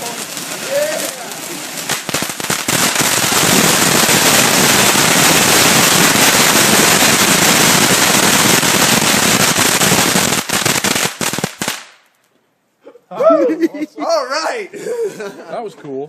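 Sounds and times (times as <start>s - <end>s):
firework fountain crackling: 0.0s - 12.3s.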